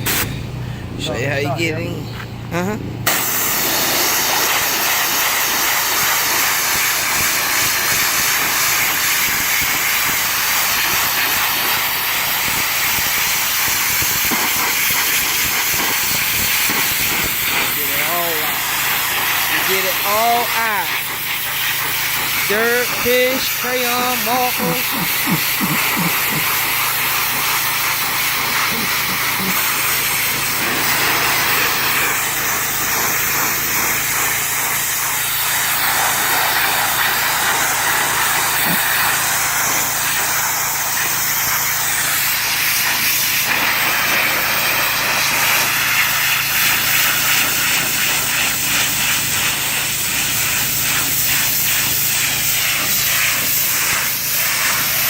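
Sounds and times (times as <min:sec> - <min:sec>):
machine hum: 0:00.0 - 0:06.3
pressure washer water spray hiss: 0:00.0 - 0:55.0.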